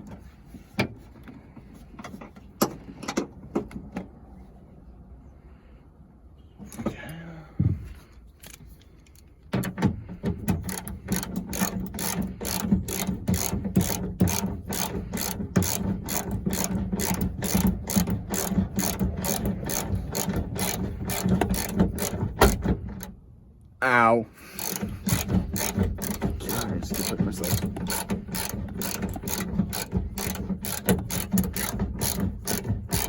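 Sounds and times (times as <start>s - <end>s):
ratchet wrench clicking: 10.5s - 23.1s, 24.6s - 33.0s.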